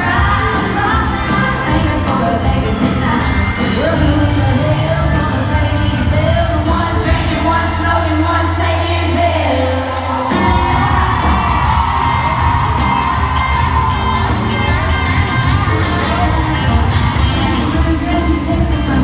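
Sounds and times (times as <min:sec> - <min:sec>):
women singing: 0:00.0 - 0:11.5, 0:17.2 - 0:19.0
country band playing: 0:00.0 - 0:19.0.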